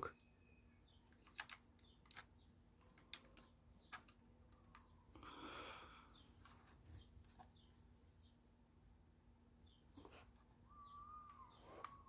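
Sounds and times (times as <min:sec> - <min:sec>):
plastic toy clicks: 0:01.1 - 0:02.3, 0:02.9 - 0:04.9
soft rustle: 0:06.1 - 0:08.5, 0:09.5 - 0:12.0.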